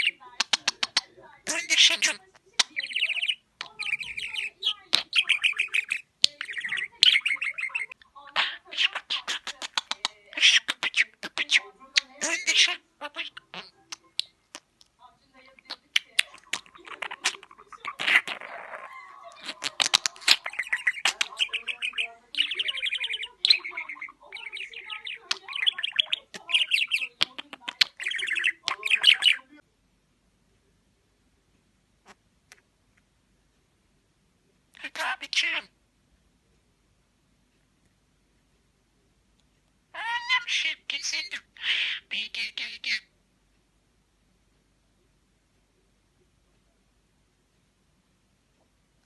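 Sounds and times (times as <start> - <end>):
budgerigar warbling and chattering: 0.0 - 29.6, 34.8 - 35.8, 39.9 - 43.1.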